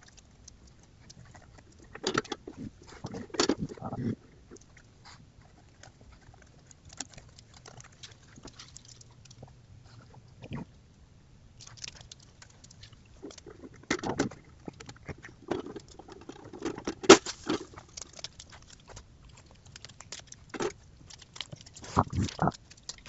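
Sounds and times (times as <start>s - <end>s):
clicking rattling and scraping: 0.0s - 4.7s, 11.8s - 23.0s.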